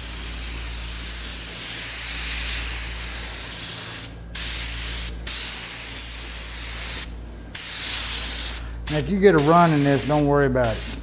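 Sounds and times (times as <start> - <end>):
spray gun hissing: 0.0 - 11.0
steady low hum: 0.0 - 11.0.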